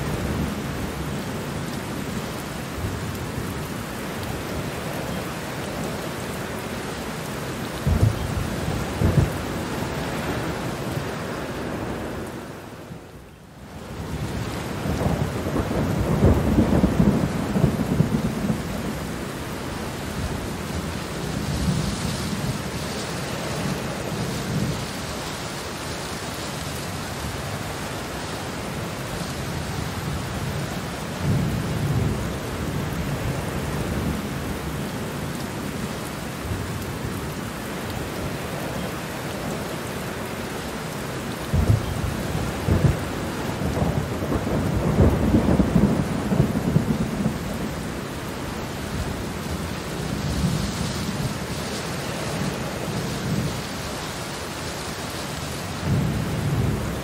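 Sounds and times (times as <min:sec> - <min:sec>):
steady rain falling: 0:00.0 - 0:57.0
thunder rumbling: 0:07.7 - 0:12.4, 0:13.9 - 0:25.0, 0:41.4 - 0:53.9.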